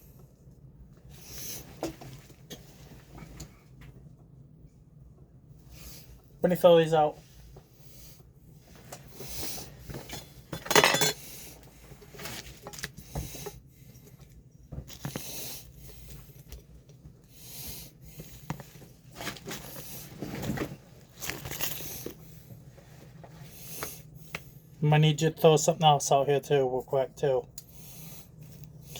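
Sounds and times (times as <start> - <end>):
utensils and dishes clinking: 10.1 - 11.2.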